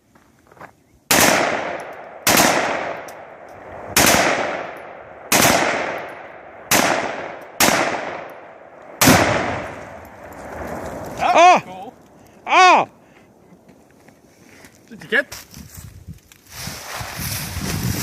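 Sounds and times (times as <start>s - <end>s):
rifle shots: 1.1s - 9.9s.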